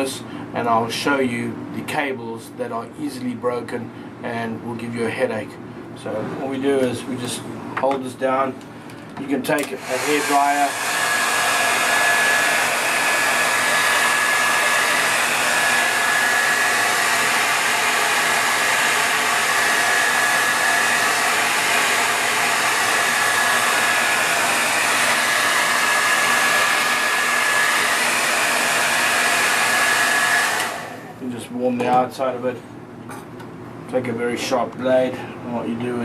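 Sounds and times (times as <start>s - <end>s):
hair dryer running: 9.5s - 32.1s.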